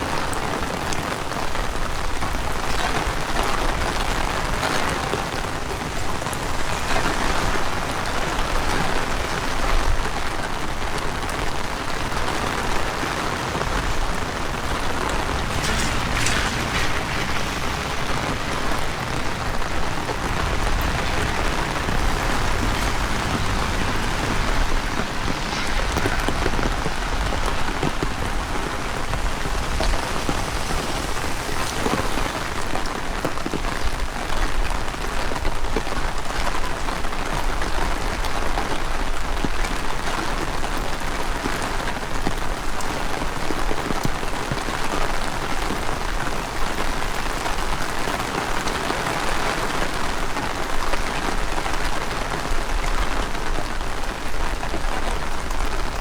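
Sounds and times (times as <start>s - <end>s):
heavy rain falling: 0.0s - 56.0s
strong wind rumble: 1.7s - 34.5s.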